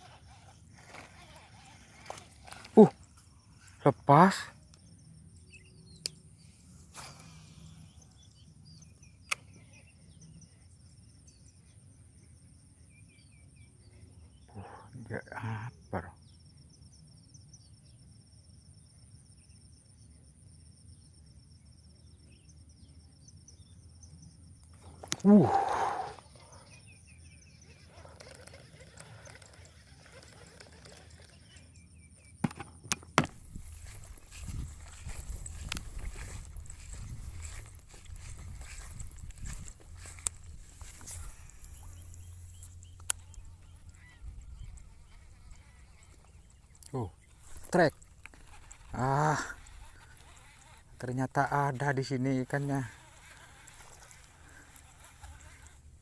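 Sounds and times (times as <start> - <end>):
insects chirping: 0.0 - 56.0
sharp clicks: 37.4 - 51.6.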